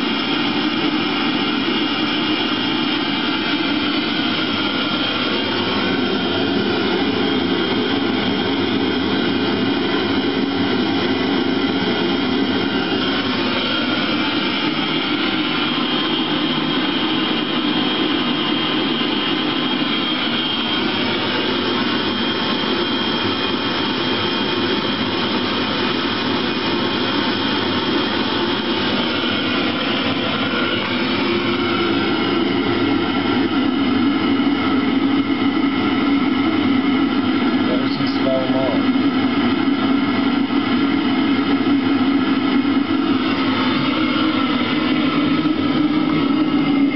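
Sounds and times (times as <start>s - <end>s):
heater fan and burner rushing: 0.0s - 46.9s
thin high whine: 0.0s - 46.9s.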